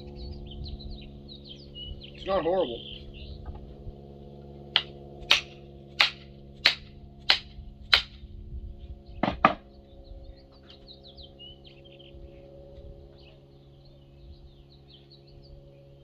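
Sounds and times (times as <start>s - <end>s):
steady hum: 0.0s - 16.0s
sharp knocks on axe handle: 9.2s - 9.6s.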